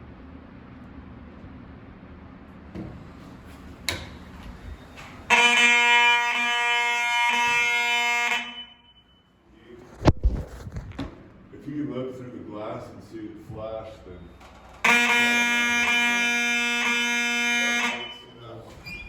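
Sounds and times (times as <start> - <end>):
buzzy fire alarm horn: 4.3 - 9.6, 14.2 - 19.0.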